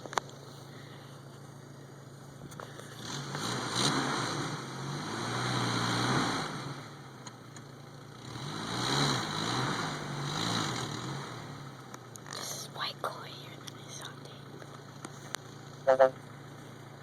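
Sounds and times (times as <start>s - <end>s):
car engine revving: 2.2s - 13.3s.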